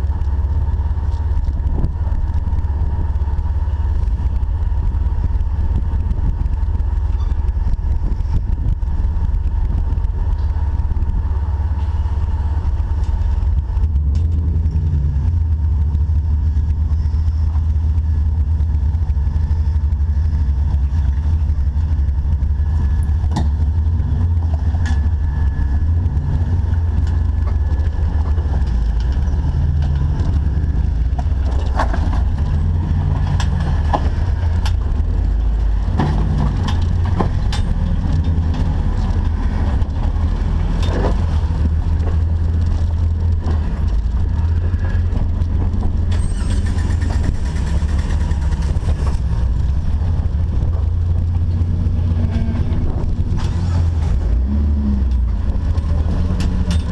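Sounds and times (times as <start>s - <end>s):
engine low rumble: 0.0s - 56.9s.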